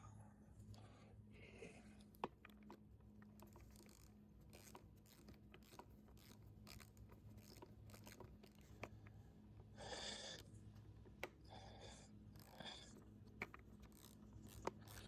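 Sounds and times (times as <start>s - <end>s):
small metal parts clicking: 13.4s - 15.0s.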